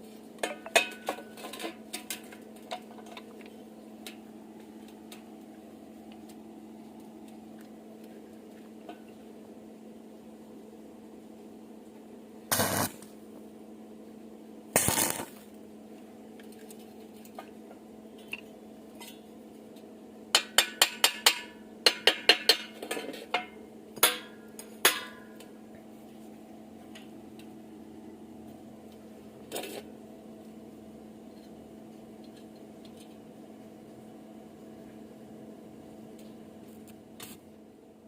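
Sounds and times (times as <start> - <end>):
steady low hum: 0.0 - 38.0
tapping on steel angle iron: 20.3 - 25.2.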